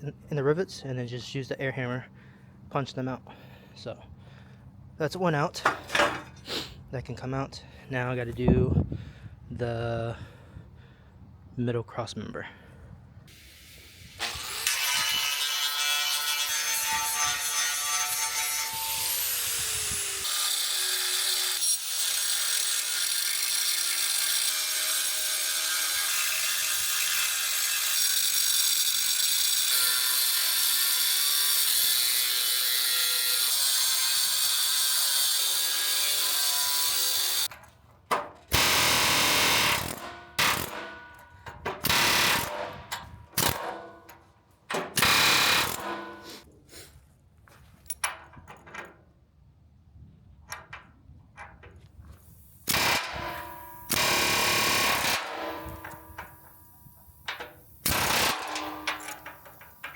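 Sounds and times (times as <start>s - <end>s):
power tool cutting steel rivets: 5.6s - 6.4s, 13.3s - 46.4s, 52.3s - 59.9s.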